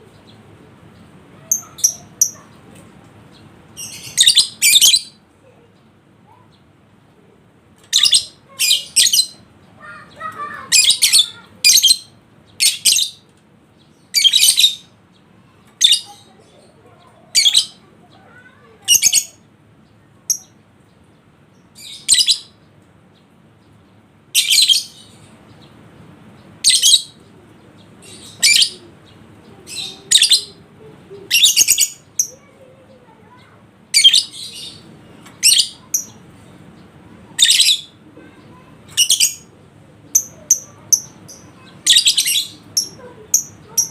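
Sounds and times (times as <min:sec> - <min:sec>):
bird chirping shrilly: 0:03.8 - 0:05.2, 0:40.1 - 0:43.9.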